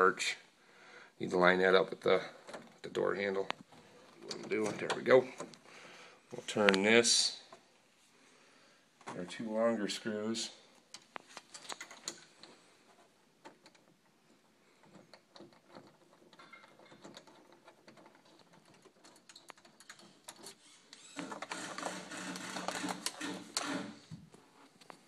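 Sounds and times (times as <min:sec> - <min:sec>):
small metal clicks: 0:10.9 - 0:12.6, 0:14.8 - 0:21.6.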